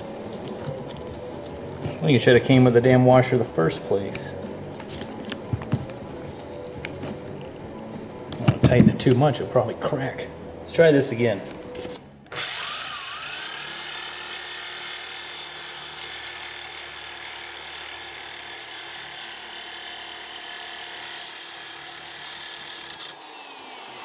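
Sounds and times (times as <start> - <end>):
impact wrench motor whine: 12.3 - 24.0.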